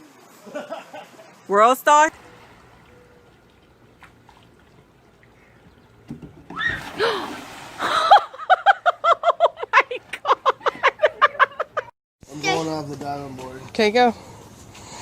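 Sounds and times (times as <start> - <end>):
water splash: 2.1 - 8.7.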